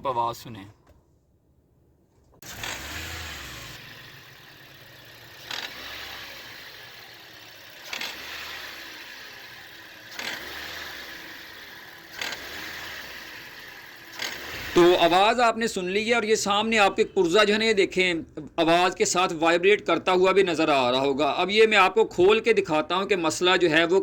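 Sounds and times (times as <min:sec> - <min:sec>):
car engine revving: 0:02.4 - 0:15.0.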